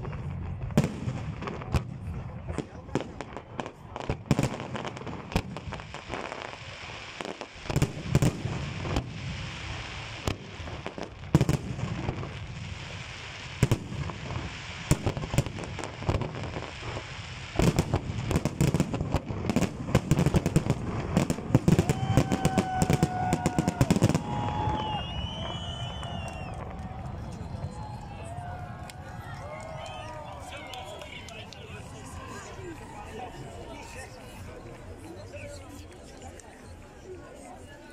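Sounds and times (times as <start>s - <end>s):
fireworks bangs and crackle: 0.0s - 32.3s.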